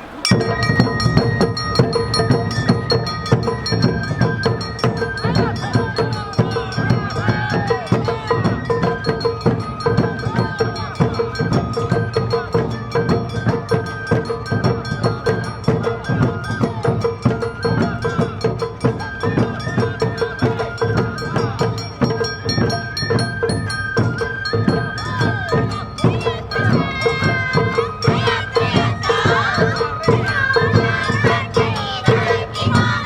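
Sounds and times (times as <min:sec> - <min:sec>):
bamboo flute melody: 0:00.0 - 0:33.0
drums and percussion beat: 0:00.0 - 0:33.0
hand gong ringing: 0:00.1 - 0:03.8.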